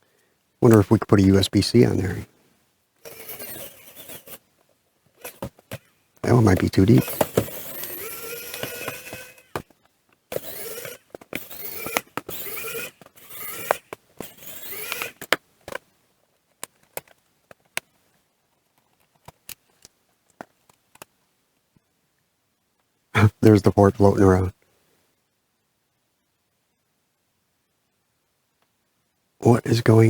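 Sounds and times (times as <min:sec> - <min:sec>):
plastic scraping and creaking: 0:05.2 - 0:15.9.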